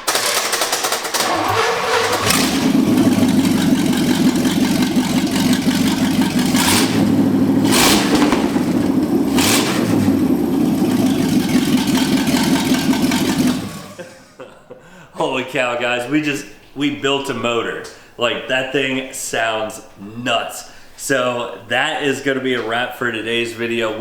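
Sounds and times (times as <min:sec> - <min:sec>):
car engine starting and revving: 0:00.0 - 0:14.3.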